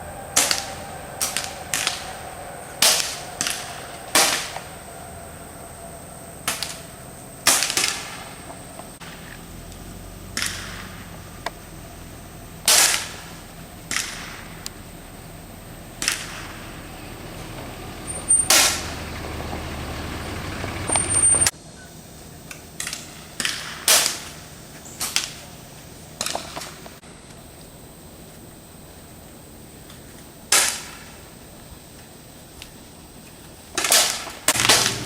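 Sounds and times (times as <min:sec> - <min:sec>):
air rifle shots: 0:10.4 - 0:11.1, 0:12.6 - 0:14.6, 0:16.0 - 0:16.7, 0:33.8 - 0:35.0.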